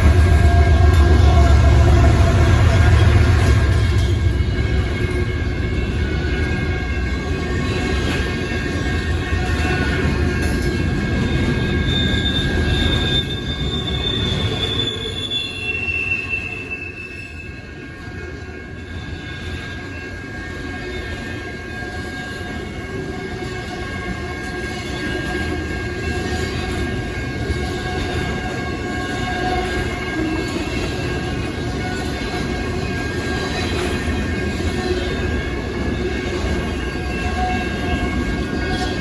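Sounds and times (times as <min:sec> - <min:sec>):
freight train rumbling past: 0:00.0 - 0:15.6, 0:17.5 - 0:39.0
high-pitched wheel squeal: 0:11.4 - 0:17.7.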